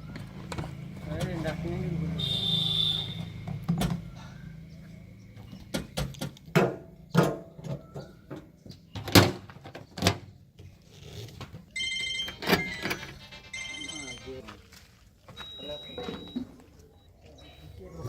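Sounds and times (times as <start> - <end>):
sharp knocks and clanks: 5.4 - 10.2
phone ringtone: 11.8 - 14.6, 15.4 - 16.4.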